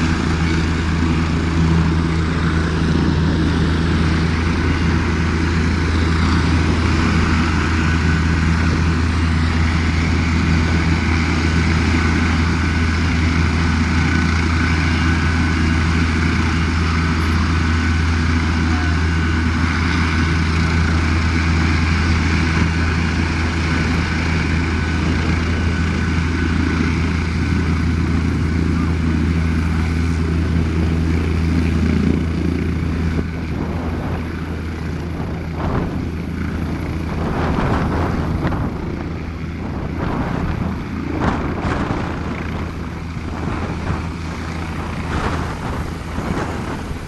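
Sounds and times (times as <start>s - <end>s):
helicopter running: 0.0s - 47.0s.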